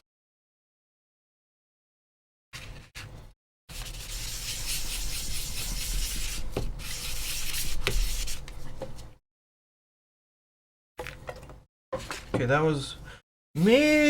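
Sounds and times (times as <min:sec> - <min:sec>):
sandpaper rubbing on plastic: 0:03.7 - 0:08.5.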